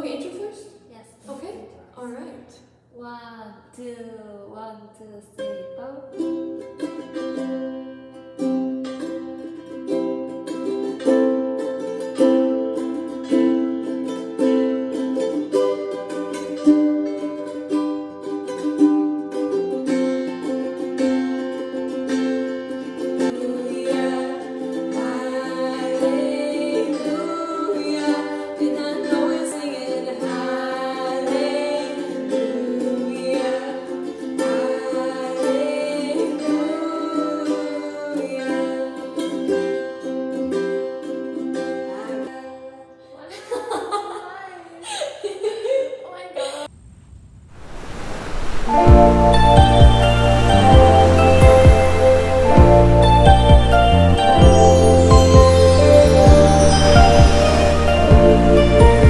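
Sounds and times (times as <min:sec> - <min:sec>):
person singing: 0:22.9 - 0:39.6, 0:48.7 - 0:59.0
strummed acoustic chords: 0:48.7 - 0:59.0.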